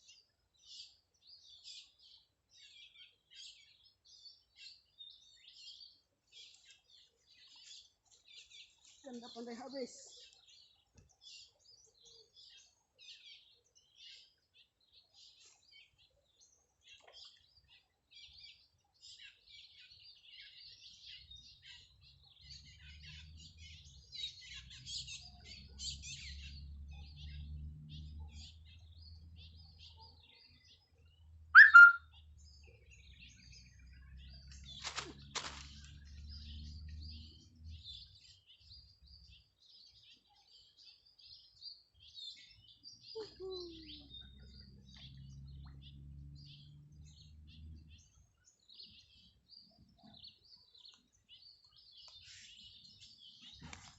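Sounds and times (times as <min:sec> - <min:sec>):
small birds chirping: 0:00.0 - 0:53.9
short loud high sound: 0:31.6 - 0:32.0.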